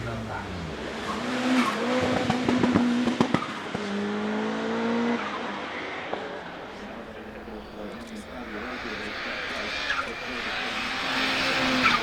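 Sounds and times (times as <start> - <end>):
rally car engine at high revs: 0.0 - 12.0.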